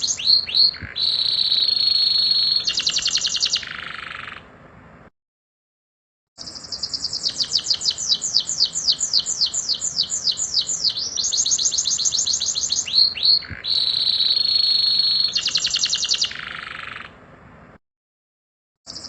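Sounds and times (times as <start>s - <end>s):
canary singing: 0.0s - 4.5s, 6.4s - 17.2s.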